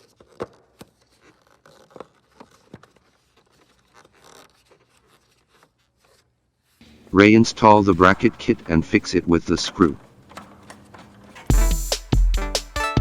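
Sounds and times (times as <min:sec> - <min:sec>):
small plastic clicks and scrapes: 0:00.0 - 0:06.8
rustling scrape: 0:00.0 - 0:12.2.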